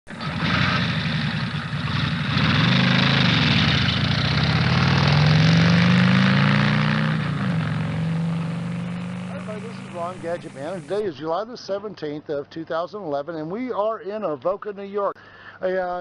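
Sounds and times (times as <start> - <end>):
vehicle engine under load: 0.1 - 11.0.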